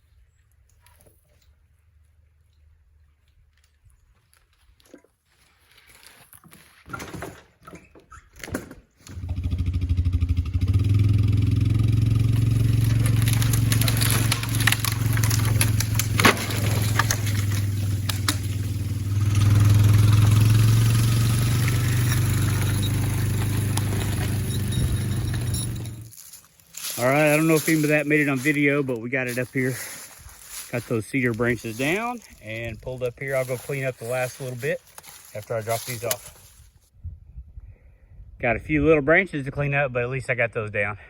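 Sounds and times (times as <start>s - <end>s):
engine running with deep hum: 9.1s - 26.2s.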